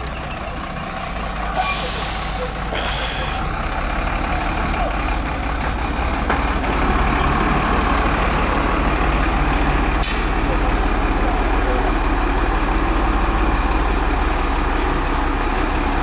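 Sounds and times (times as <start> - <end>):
diesel truck engine running: 0.0 - 16.0
air brakes hissing: 0.8 - 3.4.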